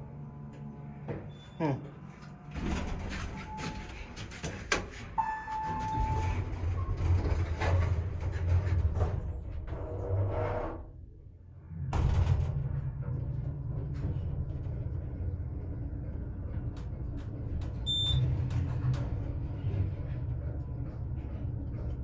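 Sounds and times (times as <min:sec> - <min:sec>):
elevator motor hum: 0:00.0 - 0:22.0.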